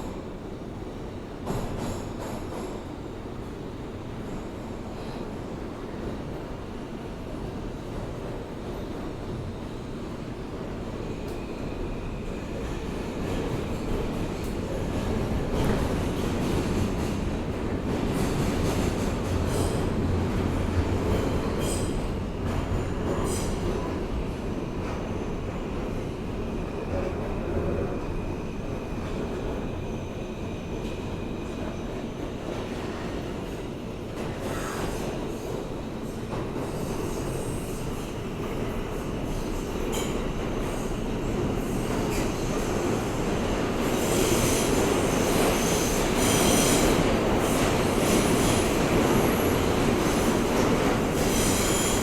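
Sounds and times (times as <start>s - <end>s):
train wheels rumbling on rails: 0.0s - 3.4s, 4.1s - 52.0s.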